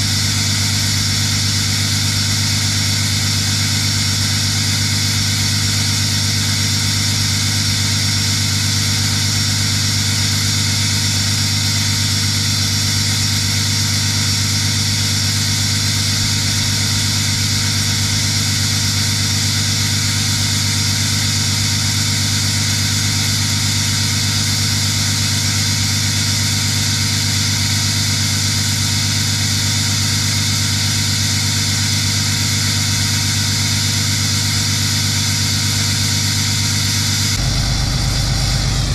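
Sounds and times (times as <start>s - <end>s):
diesel engine idling: 37.3s - 38.9s.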